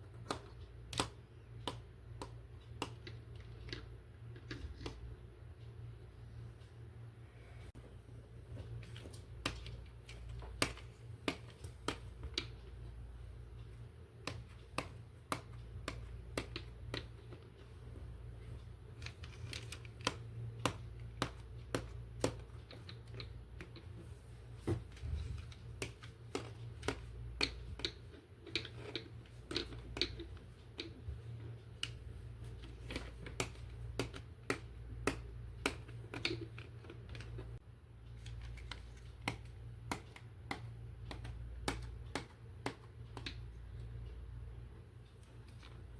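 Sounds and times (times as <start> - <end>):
steady low hum: 0.0 - 45.9
plastic toy parts clicking: 32.8 - 37.4.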